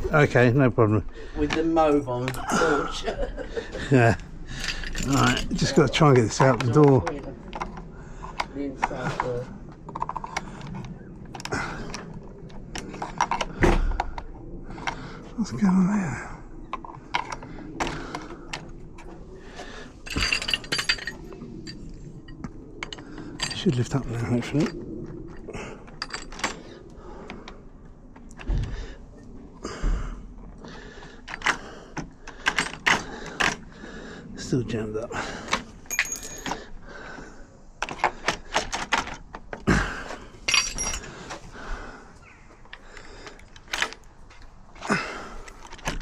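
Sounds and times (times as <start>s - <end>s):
metal clinking rattle: 4.6s - 5.9s, 20.0s - 21.9s, 35.8s - 36.7s, 40.5s - 41.4s
door lock clicking and rattling: 31.3s - 33.7s, 37.8s - 39.6s.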